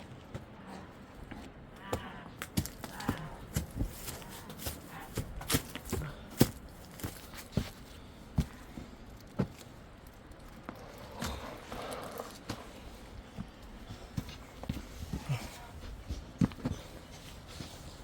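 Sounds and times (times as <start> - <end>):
steps and knocks on hard ground: 1.8 - 9.7.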